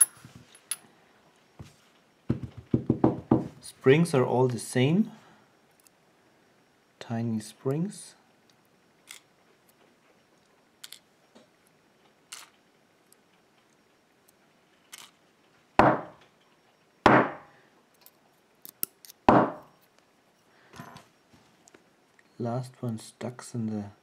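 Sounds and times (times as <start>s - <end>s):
small metal clicks: 17.9s - 19.2s.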